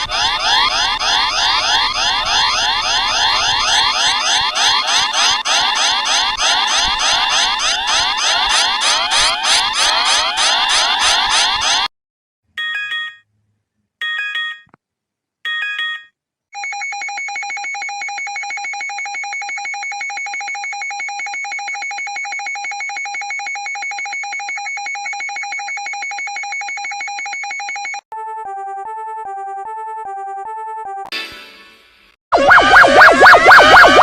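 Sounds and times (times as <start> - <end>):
buzzing alarm tone: 0.0 - 11.9, 32.3 - 34.0.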